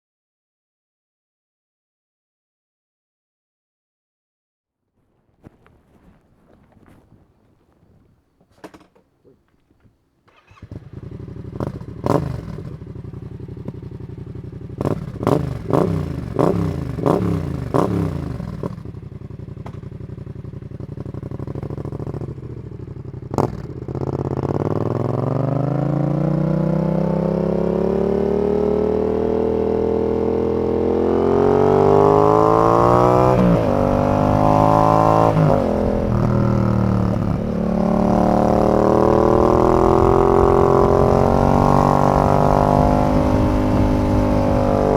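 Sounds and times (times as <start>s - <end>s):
motorcycle engine revving: 10.3s - 44.9s.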